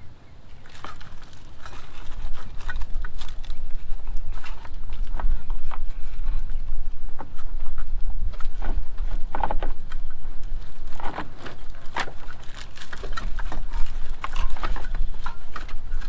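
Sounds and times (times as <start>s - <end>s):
hands handling plastic parts: 0.6s - 3.8s.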